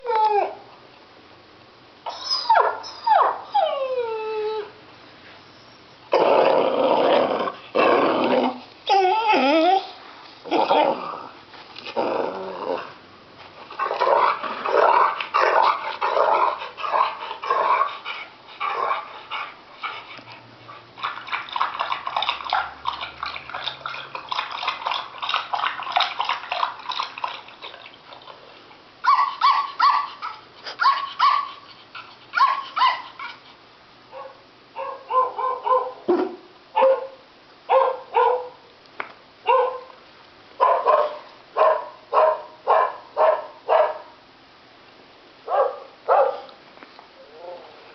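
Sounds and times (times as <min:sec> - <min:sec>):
dogs barking and yipping: 0:02.1 - 0:04.6, 0:13.7 - 0:27.9, 0:29.0 - 0:33.5, 0:34.1 - 0:38.6, 0:39.5 - 0:39.9, 0:40.6 - 0:44.2, 0:45.5 - 0:46.6.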